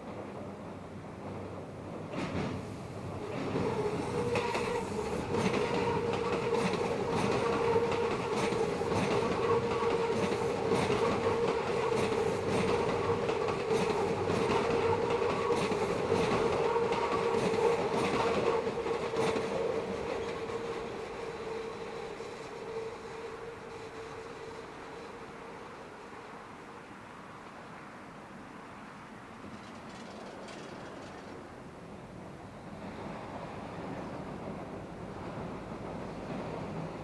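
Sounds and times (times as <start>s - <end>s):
wheels clacking over rail joints: 1.3s - 21.1s, 29.4s - 31.6s
train wheels squealing on rails: 2.0s - 27.3s, 29.2s - 37.0s.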